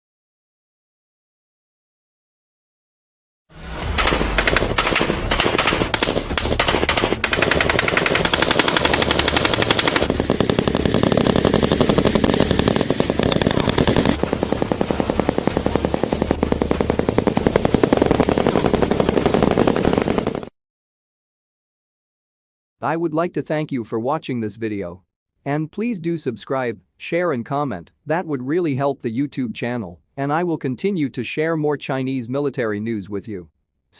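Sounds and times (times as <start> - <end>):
automatic gunfire: 3.8 - 20.4.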